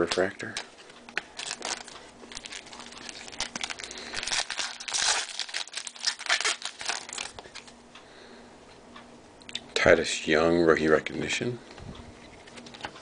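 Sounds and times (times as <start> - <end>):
cards and packaging crinkling: 0.0 - 7.7.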